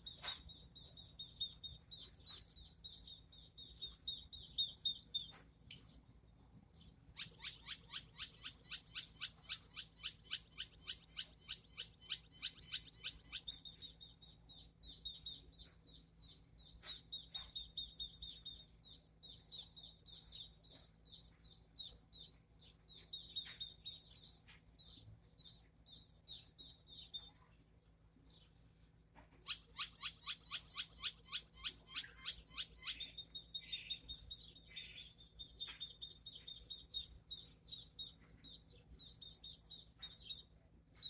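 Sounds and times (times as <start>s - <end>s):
bird chirps: 0.0s - 27.6s, 28.2s - 41.0s
bird chattering trill: 7.2s - 27.3s, 29.4s - 40.5s.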